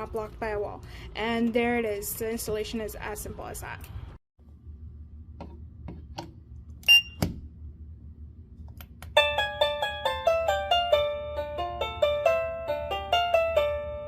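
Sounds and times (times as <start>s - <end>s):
low steady hum: 0.0s - 12.4s
plucked harp-like melody: 9.2s - 14.0s.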